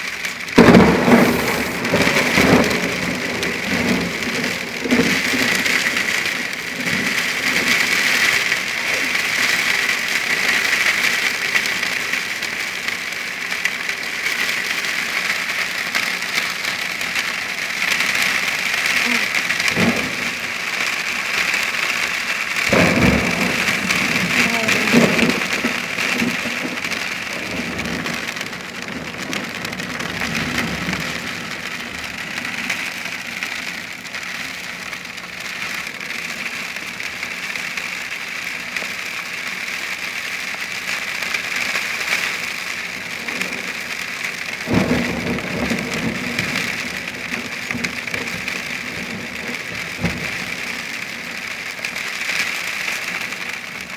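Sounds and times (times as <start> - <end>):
heavy rain and hail pelting: 0.0 - 53.9
thunder cracking and rumbling: 0.4 - 38.8, 40.5 - 52.4.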